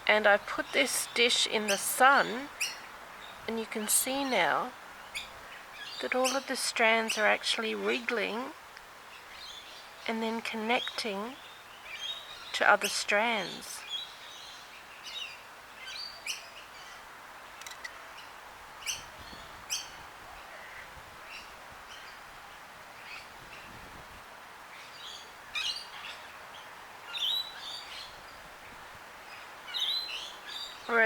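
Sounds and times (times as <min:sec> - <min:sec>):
small birds chirping: 0:00.0 - 0:23.8, 0:24.6 - 0:31.0
faint outdoor background hiss: 0:00.0 - 0:31.0.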